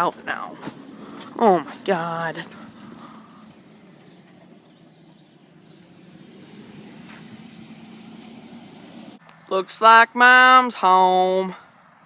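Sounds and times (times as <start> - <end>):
distant vehicle engine hum: 0.0 - 9.5.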